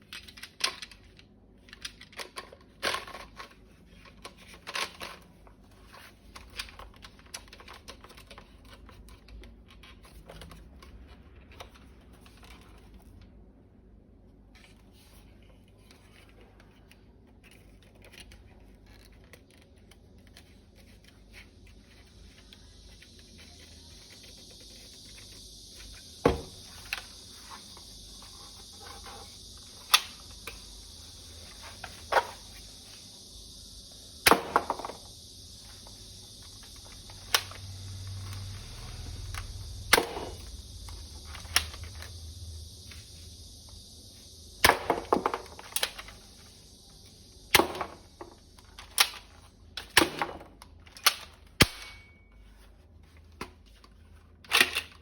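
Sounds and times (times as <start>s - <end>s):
steady high hiss: 19.5s - 52.7s.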